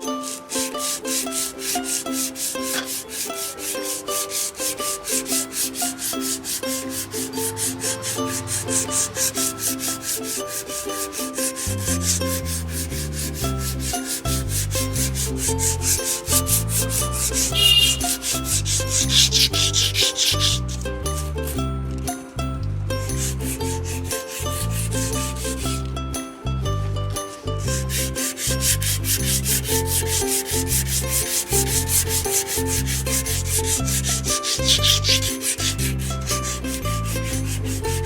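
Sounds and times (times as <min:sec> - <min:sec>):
deep bass line: 0:11.7 - 0:34.3.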